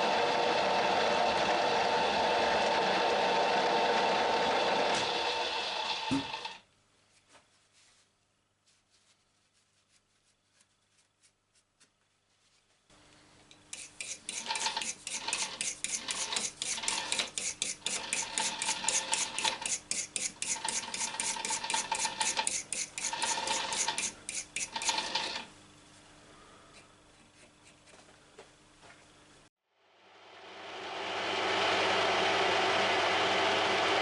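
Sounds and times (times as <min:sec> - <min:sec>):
steady machine hum: 0:13.0 - 0:34.0
metal scraping: 0:13.8 - 0:25.5.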